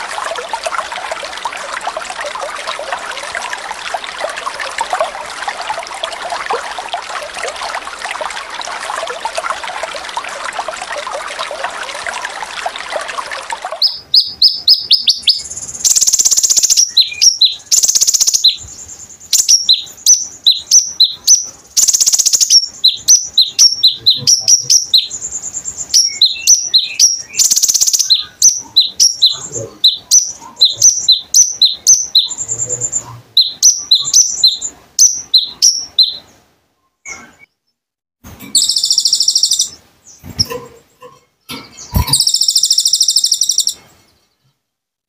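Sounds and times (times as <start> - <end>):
songbird chirping: 12.9 - 37.8, 38.5 - 44.6.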